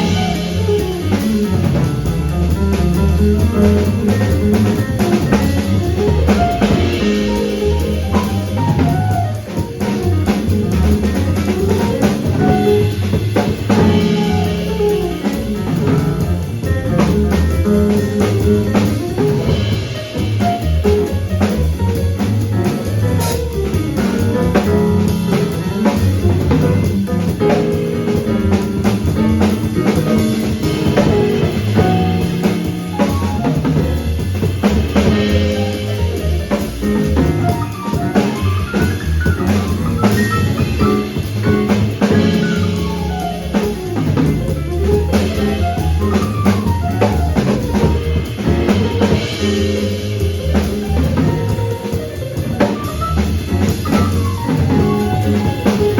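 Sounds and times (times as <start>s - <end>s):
bass line: 0.0s - 55.9s
drum kit snare and rimshots: 0.0s - 55.9s
jazz band playing: 0.0s - 55.9s.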